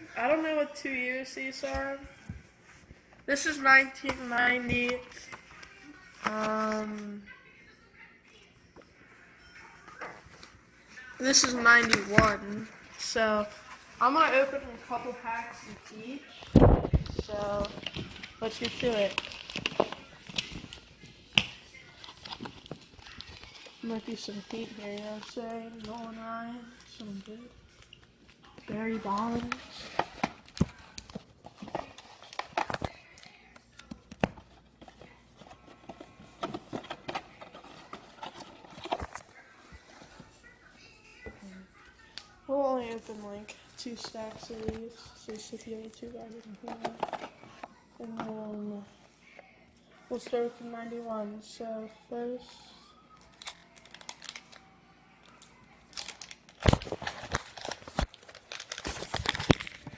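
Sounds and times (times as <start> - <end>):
cards being flipped through: 11.2 - 12.8, 55.4 - 59.9
wrapper tearing and crinkling: 17.6 - 20.8, 53.2 - 59.9.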